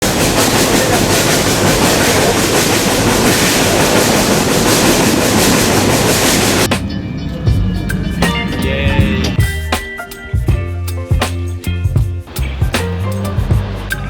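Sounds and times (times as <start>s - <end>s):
train rumbling and rattling: 0.0s - 9.7s.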